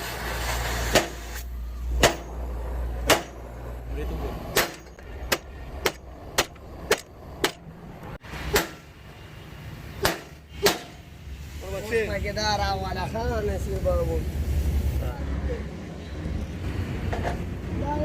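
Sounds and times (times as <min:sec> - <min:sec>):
hammer strikes: 0:00.9 - 0:02.4, 0:03.0 - 0:03.4, 0:04.5 - 0:07.7, 0:08.4 - 0:08.9, 0:10.0 - 0:11.1.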